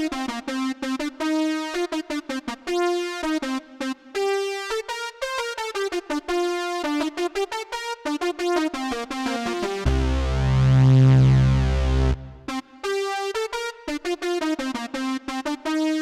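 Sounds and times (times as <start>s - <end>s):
synthesizer notes and bass chord: 9.3s - 12.6s.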